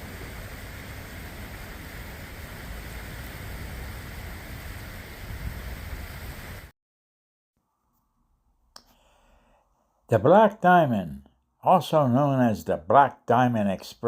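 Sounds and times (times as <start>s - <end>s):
creek water rushing: 0.0s - 6.7s.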